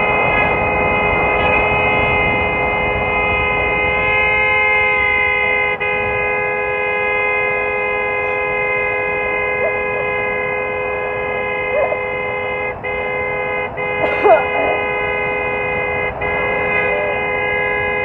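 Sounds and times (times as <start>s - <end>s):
car horn blaring: 0.0s - 18.0s.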